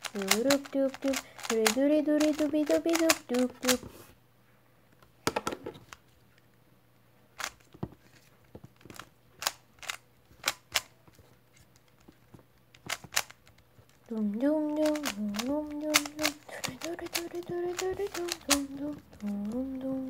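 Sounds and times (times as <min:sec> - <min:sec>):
rubik's cube plastic clicks: 0:00.0 - 0:03.9, 0:07.4 - 0:08.0, 0:08.6 - 0:20.0.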